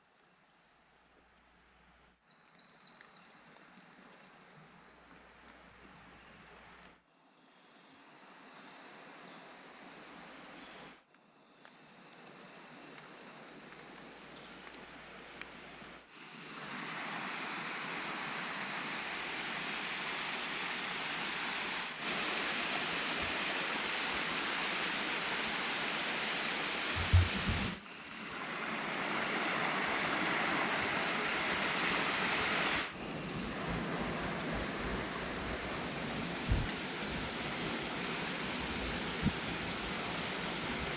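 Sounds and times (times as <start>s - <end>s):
waterfall rushing: 18.2s - 27.8s, 28.8s - 33.0s, 34.0s - 40.9s
short low thump: 27.0s - 27.8s.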